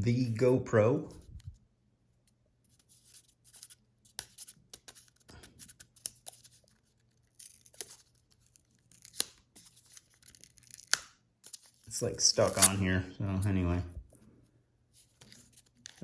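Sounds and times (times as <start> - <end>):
camera and plastic packaging handling: 4.8 - 13.0, 15.0 - 16.0.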